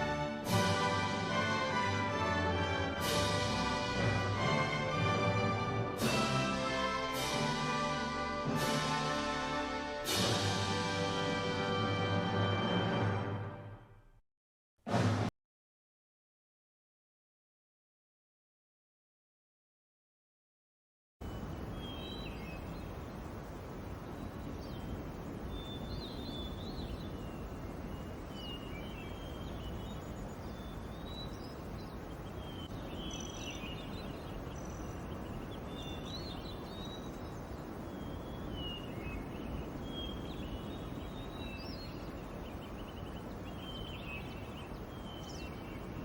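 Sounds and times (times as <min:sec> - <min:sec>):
low outdoor noise: 0:00.0 - 0:13.9, 0:21.2 - 0:46.0
small birds chirping: 0:21.2 - 0:46.0.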